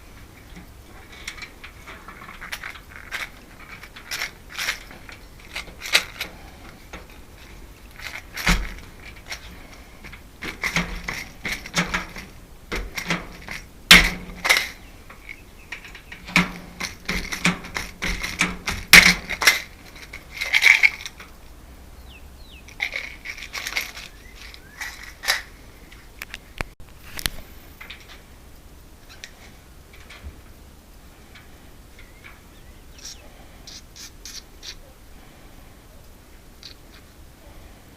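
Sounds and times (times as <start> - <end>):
metallic clicks of lock parts: 0.2 - 21.6, 22.7 - 28.2.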